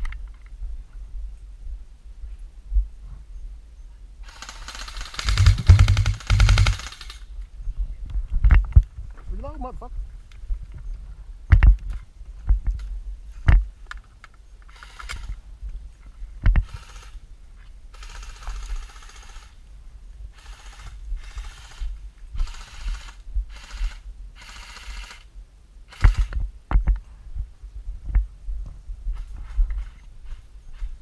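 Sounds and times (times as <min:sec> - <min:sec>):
airsoft guns firing bursts: 0:04.2 - 0:07.2, 0:18.0 - 0:19.5, 0:20.4 - 0:25.2.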